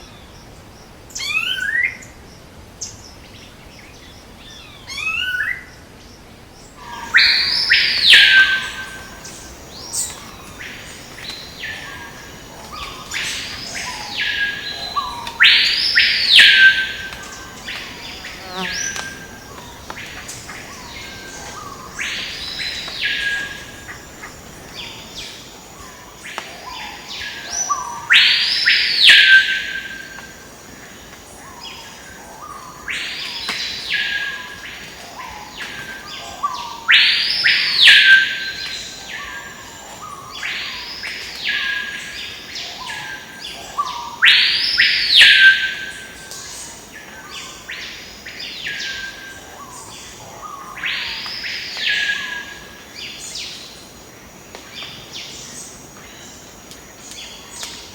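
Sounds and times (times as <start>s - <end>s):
bird calling: 6.8s - 26.0s
faint insect buzz: 6.8s - 28.1s.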